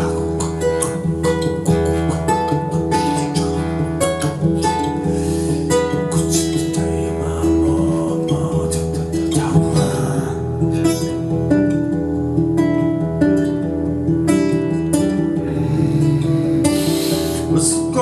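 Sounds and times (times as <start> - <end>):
acoustic guitar picking and strumming: 0.0 - 18.0.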